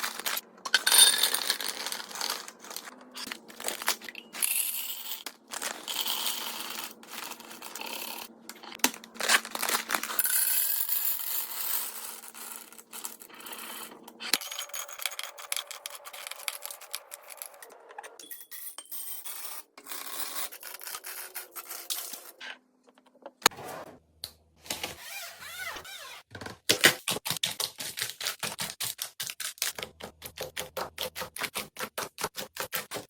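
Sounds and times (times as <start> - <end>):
packaging crinkling and rustling: 1.6 - 4.2, 8.8 - 10.2.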